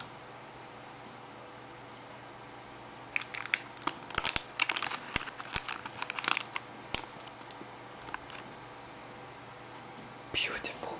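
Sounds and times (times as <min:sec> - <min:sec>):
wrapping crinkling: 0:03.1 - 0:08.5.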